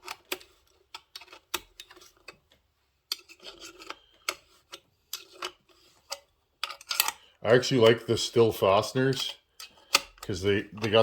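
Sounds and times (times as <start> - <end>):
small metal parts clicking: 3.1 - 7.2.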